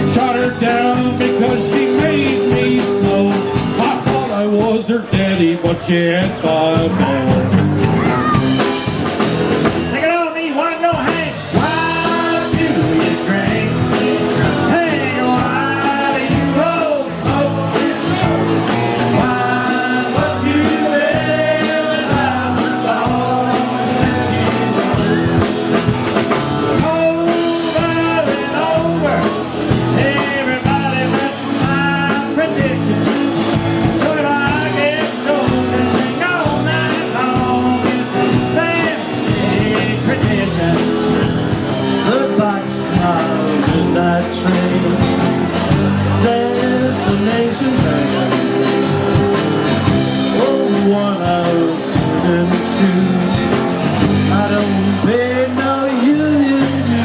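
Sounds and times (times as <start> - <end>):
live country band playing: 0.0 - 57.0.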